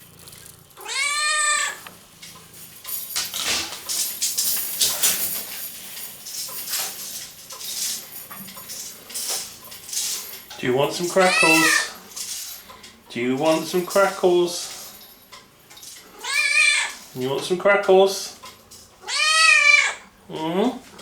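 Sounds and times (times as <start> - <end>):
cat meowing: 0.8 - 1.8, 11.2 - 11.9, 16.2 - 17.0, 19.0 - 20.0
clicks and light clatter: 1.8 - 16.1, 18.4 - 19.0.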